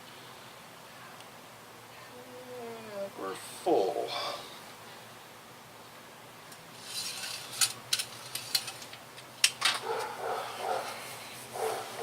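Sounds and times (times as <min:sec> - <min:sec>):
metal parts scraping: 0:06.8 - 0:09.0.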